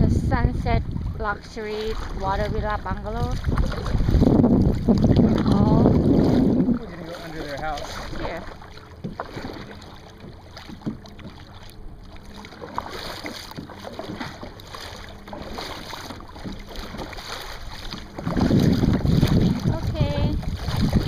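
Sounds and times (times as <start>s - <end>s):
wind buffeting microphone: 0.0s - 8.6s, 14.0s - 21.0s
water splashing at paddle: 0.0s - 21.0s
small knocks on kayak: 9.0s - 11.6s, 13.2s - 14.6s.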